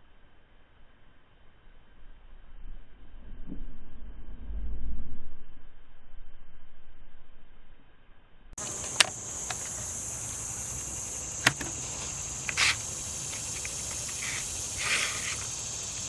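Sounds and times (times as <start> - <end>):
high-pitched insect chorus: 8.6 - 16.0
rustle: 8.6 - 16.0
sharp clicks: 8.6 - 16.0.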